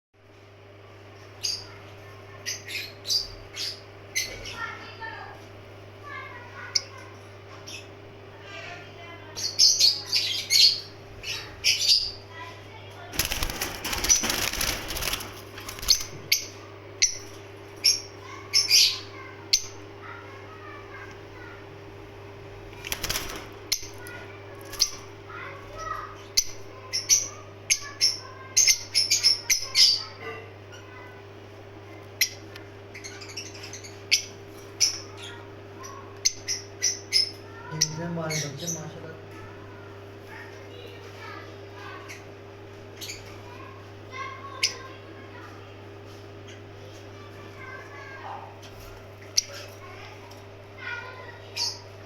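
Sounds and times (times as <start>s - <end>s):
steady low hum: 0.2s - 27.8s
wings flapping: 13.1s - 16.5s, 22.7s - 25.3s
birds chirping sharply: 13.2s - 20.0s, 22.7s - 31.0s.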